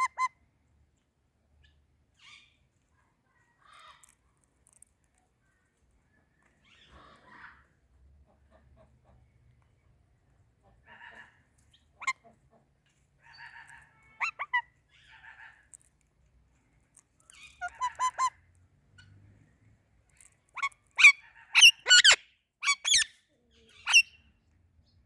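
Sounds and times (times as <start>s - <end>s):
parakeets chattering softly: 17.2s - 18.4s
parakeets screeching: 20.6s - 23.1s, 23.8s - 24.0s.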